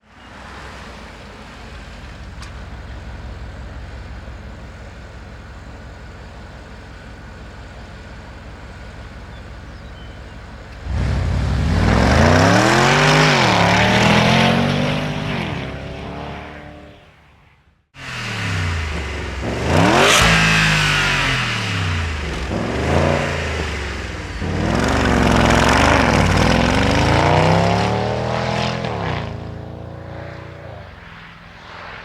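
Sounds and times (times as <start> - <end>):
car engine revving: 10.7 - 17.2, 18.0 - 32.0.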